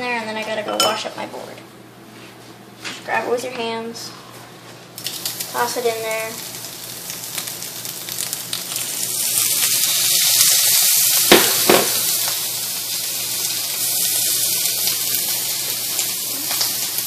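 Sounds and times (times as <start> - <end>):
meat sizzling in a frying pan: 5.0 - 17.0
sharp knocks: 11.3 - 12.0.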